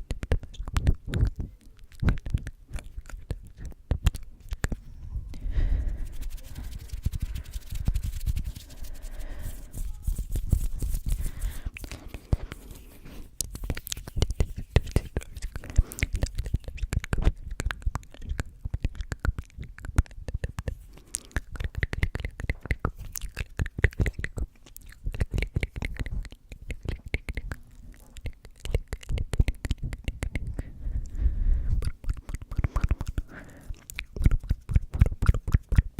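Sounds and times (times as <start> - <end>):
person whispering: 4.6 - 16.4
scratchy rustles: 5.9 - 16.7.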